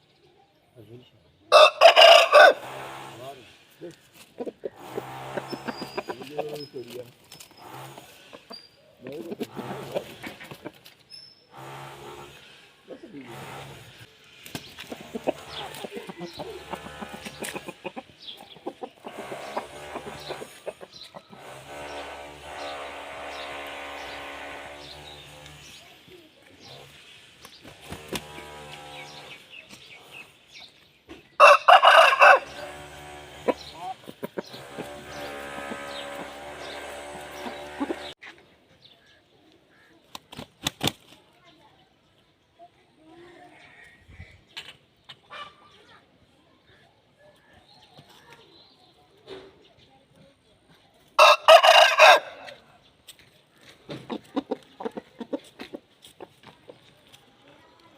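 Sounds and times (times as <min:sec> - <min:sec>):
chickens clucking: 0:00.8 - 0:41.2, 0:43.4 - 0:57.9
rooster crowing: 0:01.5 - 0:02.8, 0:31.4 - 0:32.8, 0:51.2 - 0:52.5
chicken squawking: 0:01.5 - 0:03.2, 0:04.4 - 0:06.6
small birds chirping: 0:02.8 - 0:31.4, 0:32.4 - 0:51.2.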